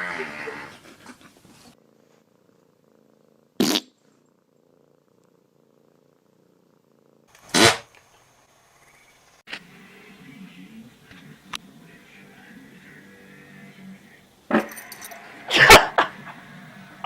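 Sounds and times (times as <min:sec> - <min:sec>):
cat purring faintly: 0:00.2 - 0:07.3, 0:09.6 - 0:14.5.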